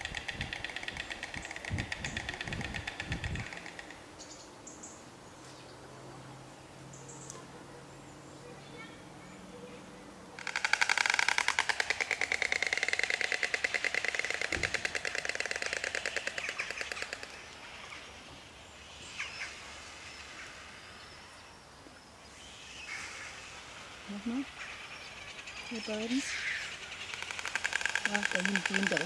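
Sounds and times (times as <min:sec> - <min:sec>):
stork bill clattering: 0:10.4 - 0:17.5, 0:27.0 - 0:29.0.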